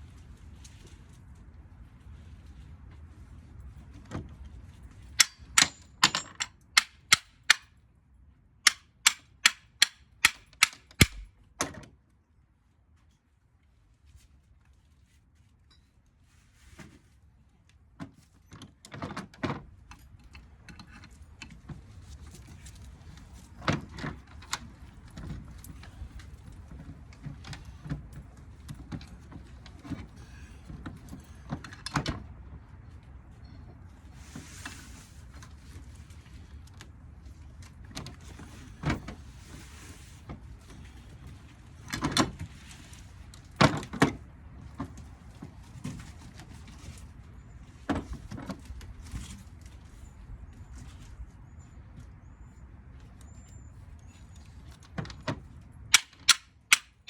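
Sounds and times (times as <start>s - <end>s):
tools clicking and scraping metal parts: 5.2s - 7.7s, 8.7s - 11.3s, 55.9s - 57.0s.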